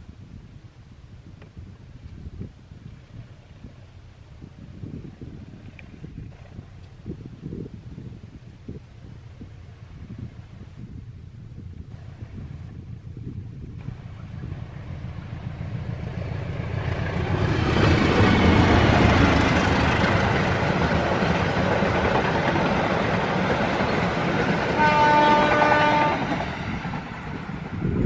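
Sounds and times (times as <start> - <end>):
freight train rumbling past: 13.8 - 28.0
locomotive horn blast: 24.7 - 26.5.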